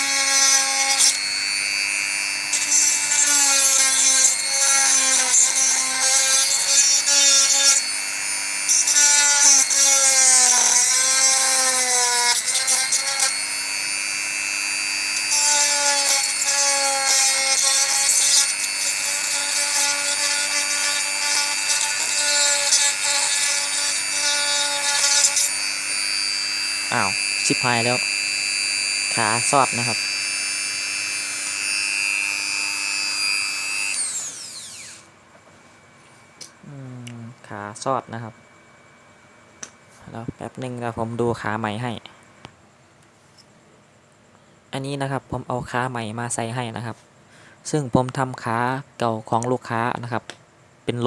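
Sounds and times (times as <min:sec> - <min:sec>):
electric rotary tool whining: 0:00.0 - 0:35.1.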